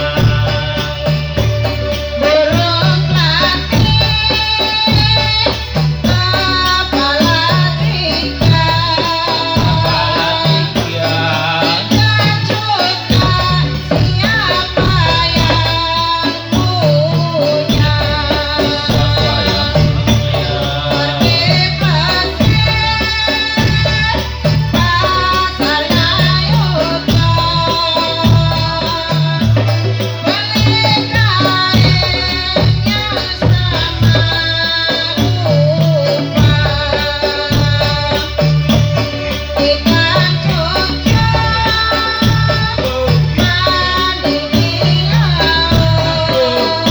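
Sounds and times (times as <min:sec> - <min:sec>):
rattling percussion: 0:00.0 - 0:46.9
sung melody: 0:05.6 - 0:33.1.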